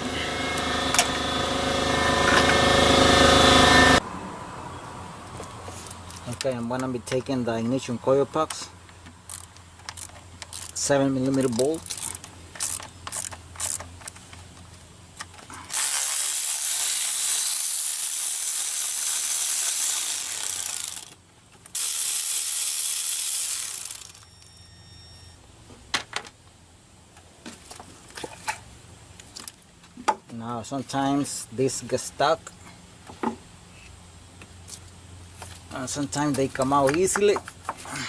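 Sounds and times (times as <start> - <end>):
hand ratchet clicking: 9.2 - 14.2, 15.7 - 24.5.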